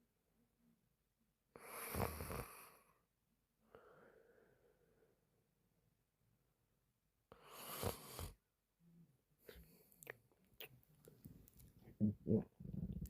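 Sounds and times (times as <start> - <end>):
mouth clicks and smacks: 9.9 - 13.0
faint low sounds: 10.6 - 13.0.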